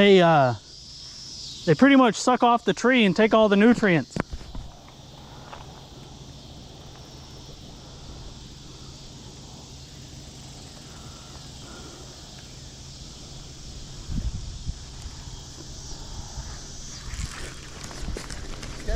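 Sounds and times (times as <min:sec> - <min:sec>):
insects droning: 0:00.0 - 0:18.9
wind rumble on microphone: 0:13.5 - 0:18.9.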